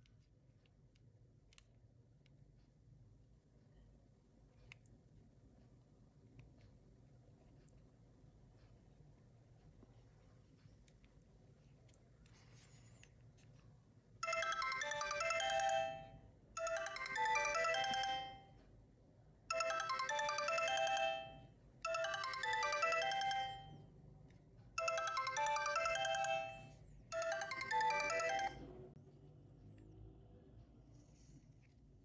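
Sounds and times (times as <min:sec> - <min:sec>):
mobile phone melodic ringtone: 0:14.2 - 0:18.6, 0:19.5 - 0:23.8, 0:24.8 - 0:28.8.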